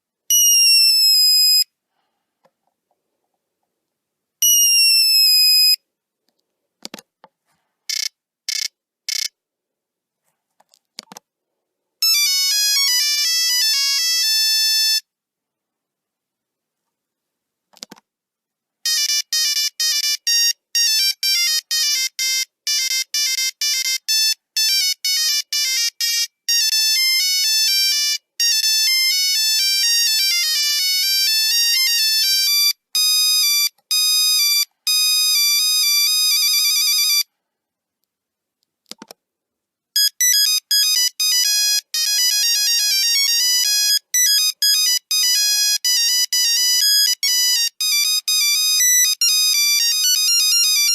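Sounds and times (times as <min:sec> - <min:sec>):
monophonic ringtone beeps: 0:40.0 - 0:50.9.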